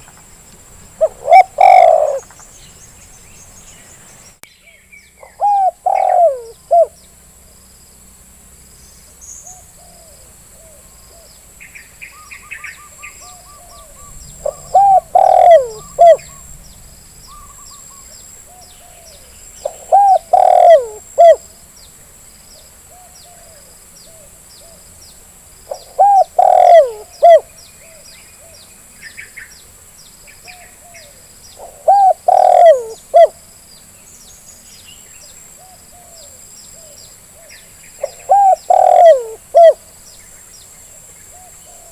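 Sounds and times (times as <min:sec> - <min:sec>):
small birds chirping: 0:00.0 - 0:08.0, 0:08.6 - 0:41.9
dove cooing: 0:01.0 - 0:02.3, 0:05.2 - 0:07.0, 0:12.1 - 0:16.7, 0:17.3 - 0:21.4, 0:25.7 - 0:28.6, 0:30.5 - 0:33.4, 0:35.6 - 0:39.9.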